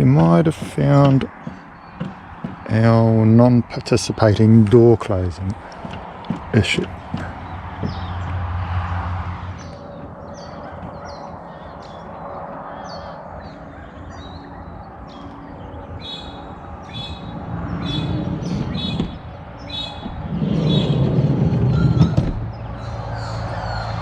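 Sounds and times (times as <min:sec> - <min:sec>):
birds chirping: 0:00.0 - 0:24.0
low rumble: 0:07.0 - 0:24.0.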